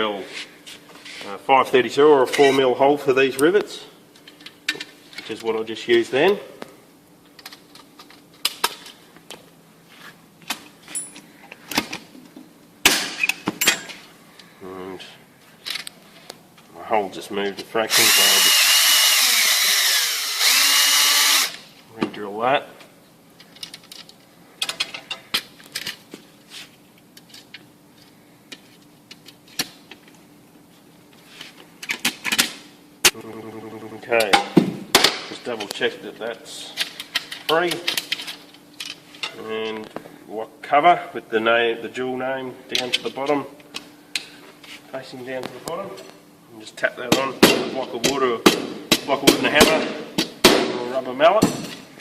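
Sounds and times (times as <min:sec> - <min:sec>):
metal parts clicking and rattling: 0:23.4 - 0:26.0.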